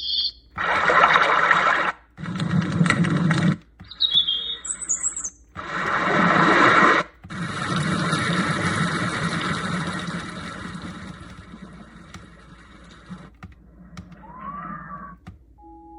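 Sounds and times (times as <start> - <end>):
bird-like chirps: 0.0 - 0.5, 3.8 - 5.5.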